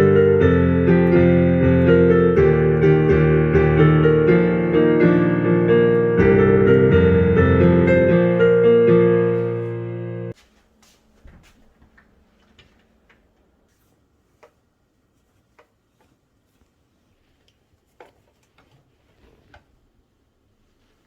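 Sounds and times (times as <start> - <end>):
piano quick even notes: 0.0 - 10.4.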